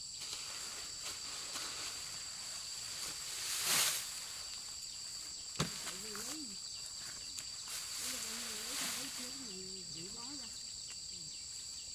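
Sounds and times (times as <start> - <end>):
insects trilling: 0.0 - 11.9
rustling swish: 0.3 - 4.5.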